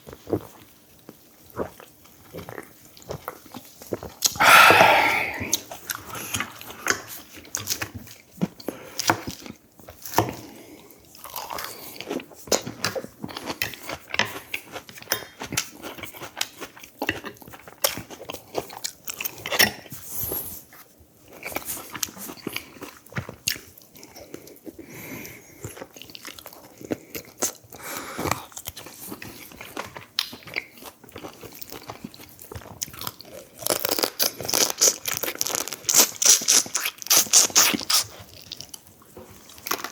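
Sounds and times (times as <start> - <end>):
person chewing food: 0.0 - 39.9
mouth clicks: 4.2 - 5.6.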